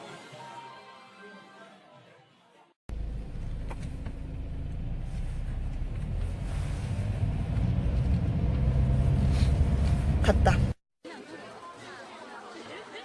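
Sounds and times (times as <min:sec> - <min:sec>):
low steady rumbling: 0:02.9 - 0:10.8.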